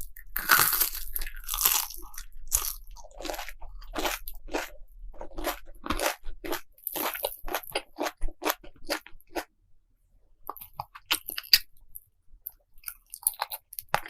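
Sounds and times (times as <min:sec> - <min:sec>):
crunchy biting and chewing: 0:00.0 - 0:09.5.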